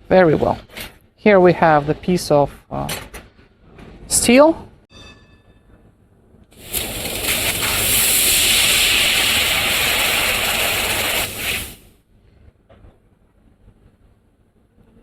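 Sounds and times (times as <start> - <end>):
laser cutter gas jet hiss: 6.6 - 11.9.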